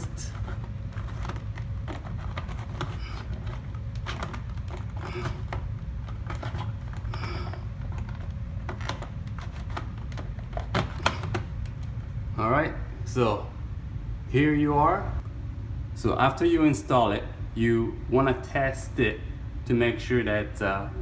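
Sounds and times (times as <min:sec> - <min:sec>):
plastic clicks and scrapes: 0:00.0 - 0:12.1
low background hum: 0:00.0 - 0:21.0.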